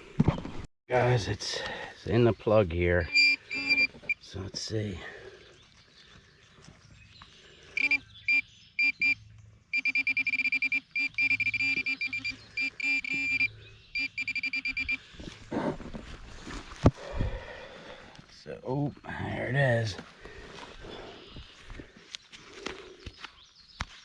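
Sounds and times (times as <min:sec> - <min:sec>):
metal detector beeping: 0:03.0 - 0:04.2, 0:07.8 - 0:15.4.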